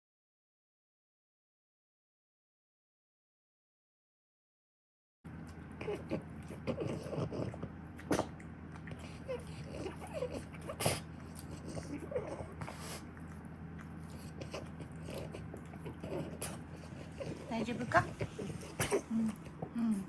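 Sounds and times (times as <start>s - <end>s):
dog snorting nose and throat noises: 5.4s - 20.0s.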